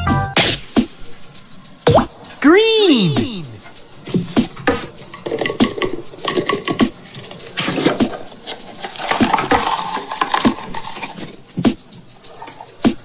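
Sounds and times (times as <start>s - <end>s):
plastic shells clicking and clattering: 4.4s - 11.6s.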